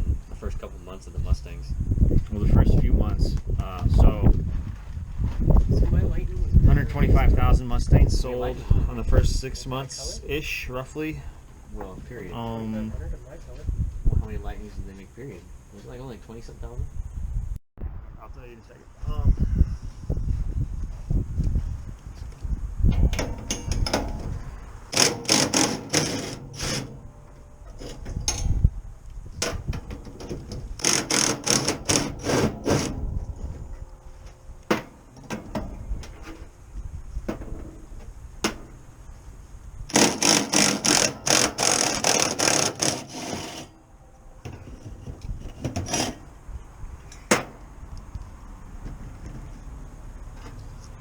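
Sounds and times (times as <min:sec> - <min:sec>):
hammering blows: 0:22.8 - 0:28.7, 0:29.3 - 0:39.0, 0:39.9 - 0:49.6.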